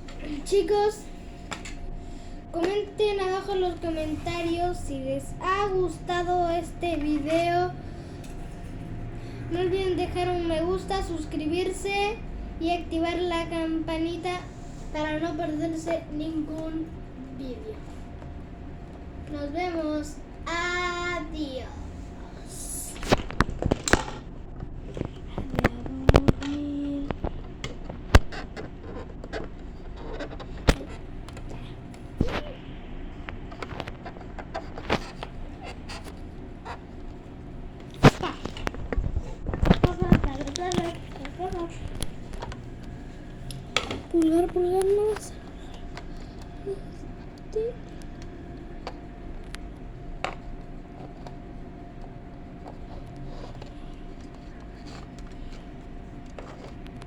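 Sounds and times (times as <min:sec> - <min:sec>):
faint constant tone: 0:00.0 - 0:57.0
steady low hum: 0:00.0 - 0:57.0
light scratching and tapping: 0:22.8 - 0:32.5, 0:33.2 - 0:57.0.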